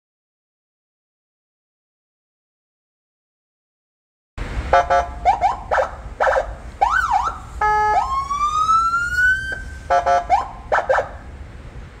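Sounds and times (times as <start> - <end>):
siren horn blast: 4.7 - 11.3
electronic siren chirps and yelps: 4.8 - 11.3
siren rising tone: 4.8 - 11.3.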